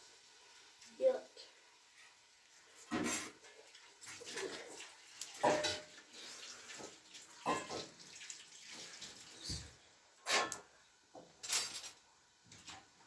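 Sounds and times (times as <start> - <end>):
water splashing and pouring: 2.7 - 9.8.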